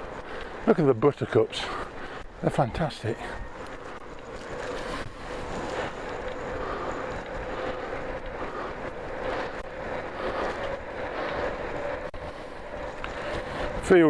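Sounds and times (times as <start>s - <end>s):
bike tyres rolling: 0.0s - 14.0s
wind noise on microphone: 3.2s - 14.0s.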